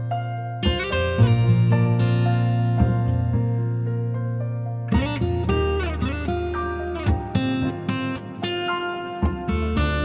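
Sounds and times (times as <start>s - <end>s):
steady bass: 0.0s - 8.6s, 9.2s - 10.0s
sustained piano notes: 0.0s - 10.0s.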